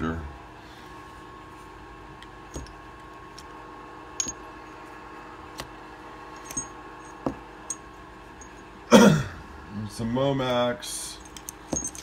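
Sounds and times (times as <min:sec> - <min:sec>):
faint steady hum: 0:00.0 - 0:12.0
hand tools clicking and knocking: 0:11.2 - 0:12.0.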